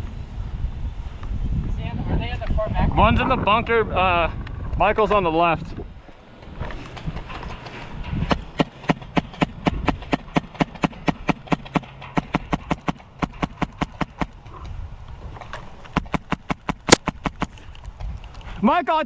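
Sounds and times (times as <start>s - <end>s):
airsoft rifle shots: 8.3s - 14.3s, 16.0s - 17.5s.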